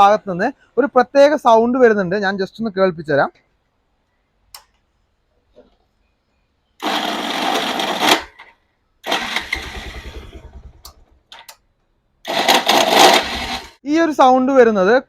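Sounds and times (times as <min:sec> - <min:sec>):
motorcycle starter grinding rattle: 0:06.8 - 0:11.4, 0:12.3 - 0:13.8.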